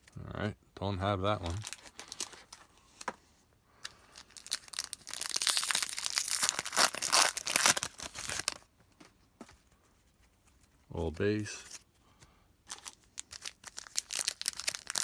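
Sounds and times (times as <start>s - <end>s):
foil wrapper crackling: 1.5s - 2.6s, 3.8s - 8.7s, 12.7s - 15.0s.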